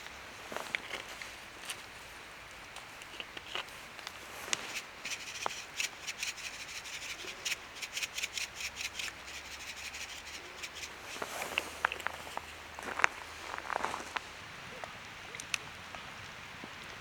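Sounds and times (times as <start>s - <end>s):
quick scraping strokes: 4.3s - 12.5s.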